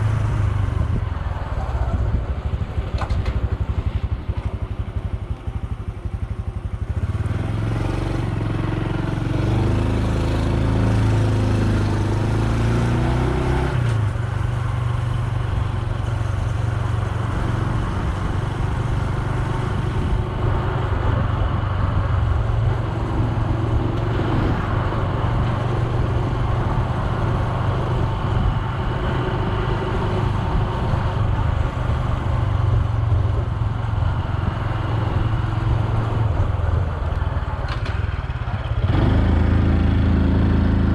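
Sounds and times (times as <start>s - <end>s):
motorcycle engine running: 0.0s - 12.6s.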